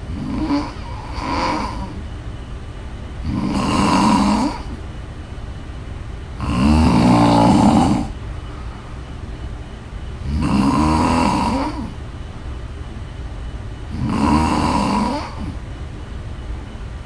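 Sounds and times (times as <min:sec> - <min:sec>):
quiet breathing: 0:00.0 - 0:02.5, 0:06.4 - 0:12.3, 0:13.8 - 0:15.8
woman snoring loudly: 0:00.1 - 0:02.0, 0:03.2 - 0:04.8, 0:06.4 - 0:08.2, 0:10.2 - 0:12.0, 0:13.9 - 0:15.6.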